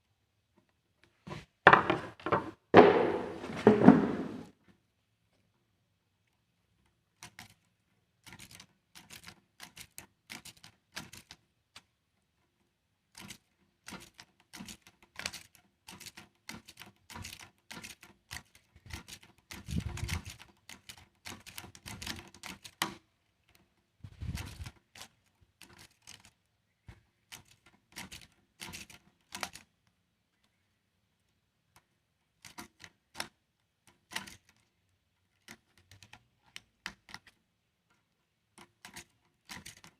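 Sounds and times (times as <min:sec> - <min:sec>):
heavy thumps: 0:01.7 - 0:04.5
parts clicking and knocking: 0:01.7 - 0:04.5.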